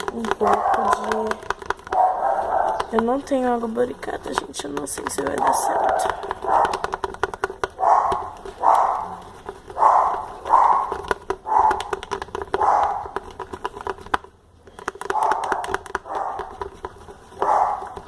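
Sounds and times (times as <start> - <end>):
dog barking: 0.3 - 3.0, 5.3 - 7.0, 7.8 - 12.0, 12.6 - 13.2, 15.1 - 16.6, 17.4 - 18.0.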